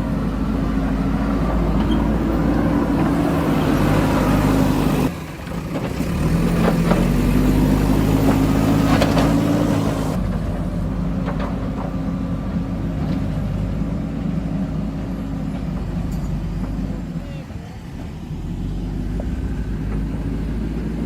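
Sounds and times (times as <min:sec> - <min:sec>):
vehicle engine running: 0:00.0 - 0:21.0.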